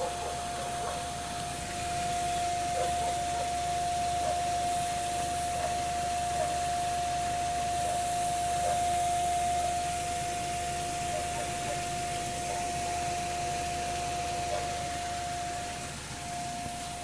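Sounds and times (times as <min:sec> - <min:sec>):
high-pitched car hum: 0:00.0 - 0:17.0
steady hiss: 0:00.0 - 0:17.0.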